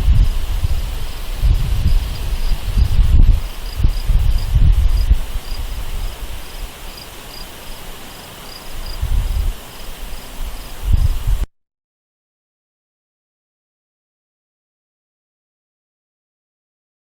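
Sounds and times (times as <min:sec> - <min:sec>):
wind rumbling on microphone: 0:00.0 - 0:11.5
insect chirping: 0:00.1 - 0:11.4.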